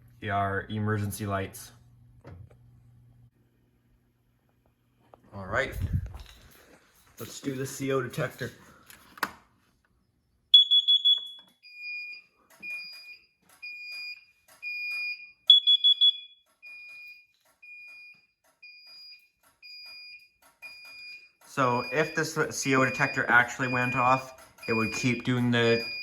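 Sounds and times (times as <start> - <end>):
quick high alarm beeps: 10.6 - 26.0.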